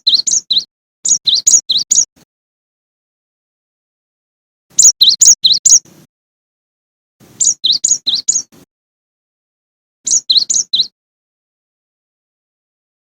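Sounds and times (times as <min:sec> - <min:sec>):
bird two-note calls: 0:04.7 - 0:05.8, 0:07.4 - 0:08.5, 0:10.1 - 0:10.9.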